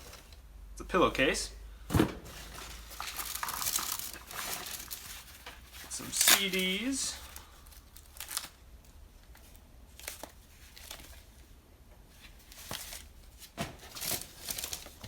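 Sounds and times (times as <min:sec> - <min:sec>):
small items rustling: 0:01.9 - 0:11.5, 0:12.1 - 0:15.0.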